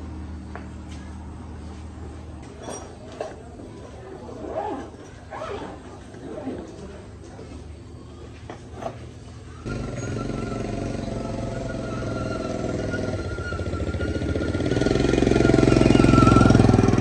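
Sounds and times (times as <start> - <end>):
small engine running: 9.6 - 17.0.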